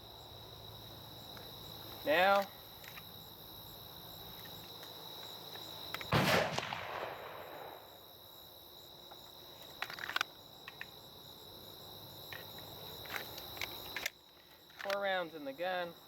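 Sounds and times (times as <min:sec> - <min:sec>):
crickets chirring: 0:00.0 - 0:16.0
loud sharp bang with echo: 0:06.2 - 0:07.9
small clicks: 0:12.3 - 0:15.1.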